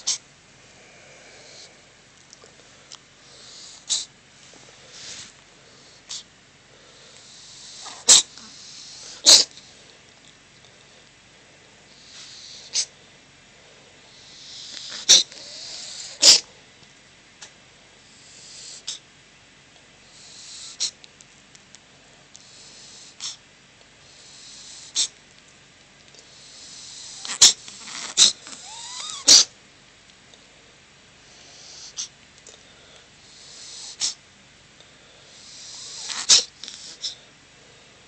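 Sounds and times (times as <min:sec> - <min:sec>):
kitten sneezing: 0:00.0 - 0:00.2, 0:03.4 - 0:04.1, 0:07.7 - 0:09.6, 0:12.1 - 0:12.9, 0:14.5 - 0:16.5, 0:20.6 - 0:21.0, 0:23.2 - 0:23.4, 0:24.7 - 0:25.2, 0:27.0 - 0:29.6, 0:33.7 - 0:34.2, 0:35.6 - 0:37.2
kitten breathy intake: 0:00.0 - 0:01.9, 0:02.5 - 0:04.1, 0:04.7 - 0:10.0, 0:11.8 - 0:13.0, 0:13.7 - 0:16.5, 0:18.1 - 0:19.0, 0:20.0 - 0:21.0, 0:22.4 - 0:23.4, 0:24.0 - 0:25.2, 0:26.2 - 0:29.2, 0:31.2 - 0:34.2, 0:34.8 - 0:38.0.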